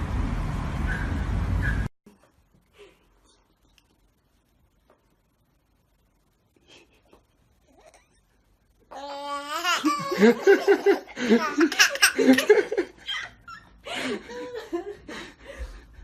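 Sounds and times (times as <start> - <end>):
small child laughing: 9.0 - 13.7.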